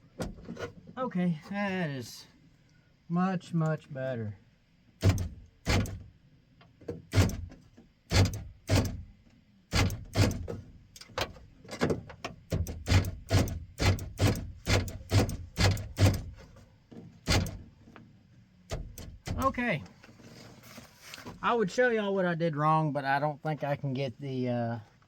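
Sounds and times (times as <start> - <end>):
metal door latch clunks: 5.0 - 6.0, 9.8 - 16.4, 17.3 - 17.6, 18.7 - 19.6.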